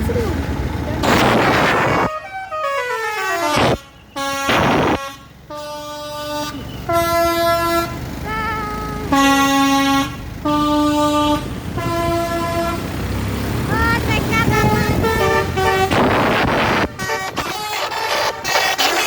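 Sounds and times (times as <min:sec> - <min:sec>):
melodic bus horn: 0:01.0 - 0:13.1, 0:13.7 - 0:19.0
short noisy blast: 0:03.5 - 0:05.2.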